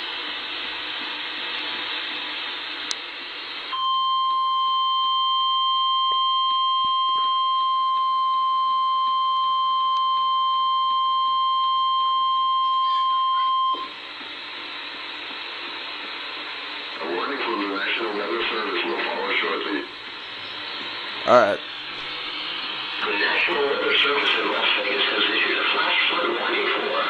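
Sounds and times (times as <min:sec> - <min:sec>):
high steady alarm beep: 0:03.7 - 0:13.9
steady hiss: 0:19.6 - 0:26.2.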